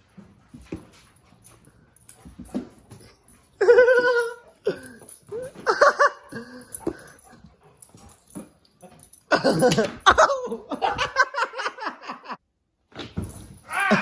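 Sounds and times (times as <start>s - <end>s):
dog whining: 3.0s - 7.4s.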